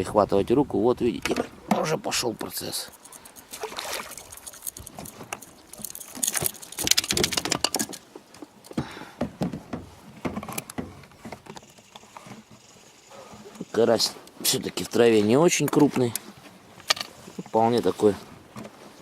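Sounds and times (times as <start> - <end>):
fish flapping in boat: 2.9 - 8.1.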